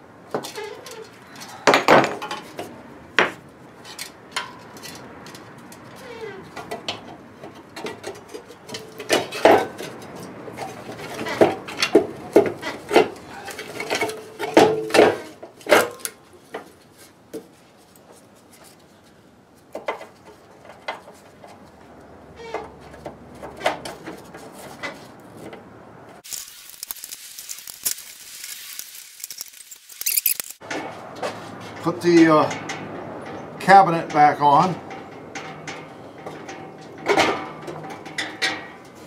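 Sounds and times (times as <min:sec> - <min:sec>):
steady high hiss: 0:26.2 - 0:30.6
metal parts clinking and knocking: 0:26.2 - 0:30.7
sharp clicks: 0:26.3 - 0:30.6.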